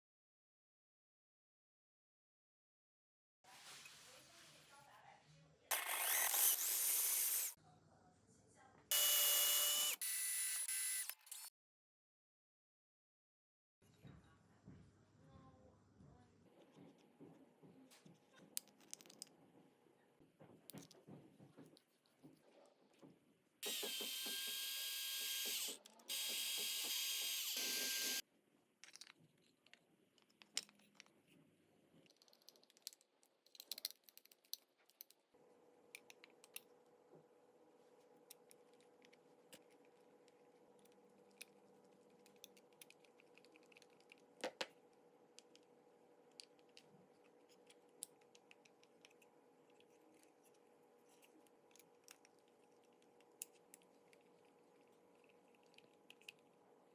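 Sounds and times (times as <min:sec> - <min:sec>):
power tool whining: 0:05.7 - 0:07.6, 0:08.9 - 0:11.5, 0:23.6 - 0:28.2
clicks and taps of parts: 0:32.0 - 0:35.2, 0:36.0 - 0:36.7.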